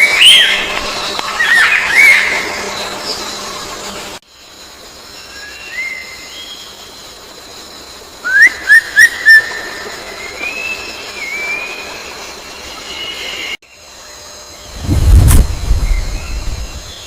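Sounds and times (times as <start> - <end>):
bird whistled song: 8.2 - 11.8.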